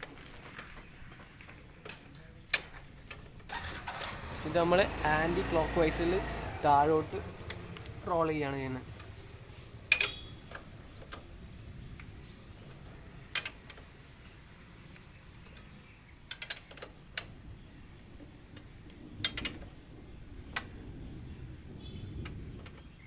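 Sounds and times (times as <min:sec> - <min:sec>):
sharp metal clicks: 0:07.0 - 0:09.2, 0:09.8 - 0:13.9, 0:14.9 - 0:17.4
spanners clinking on metal: 0:09.9 - 0:10.7.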